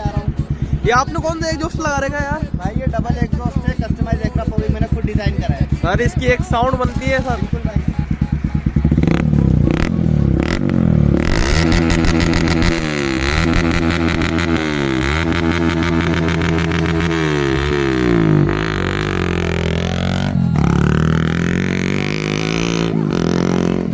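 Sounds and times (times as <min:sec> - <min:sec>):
motorcycle engine revving: 0:00.0 - 0:23.9.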